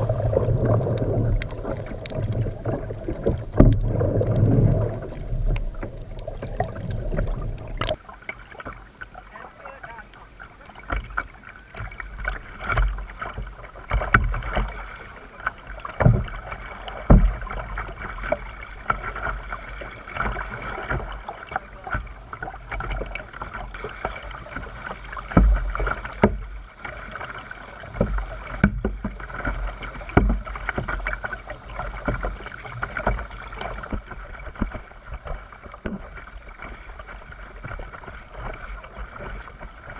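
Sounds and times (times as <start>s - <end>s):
paddle splashing in water: 0.0s - 39.9s.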